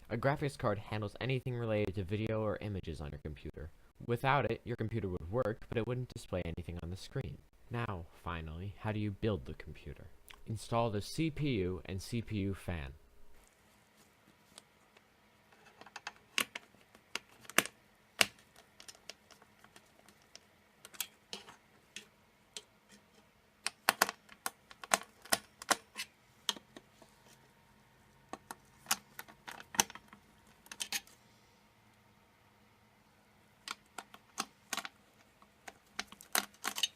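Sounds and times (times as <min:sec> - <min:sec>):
faint steady hum: 0:00.0 - 0:36.9
plastic and metal clicks: 0:23.6 - 0:25.9.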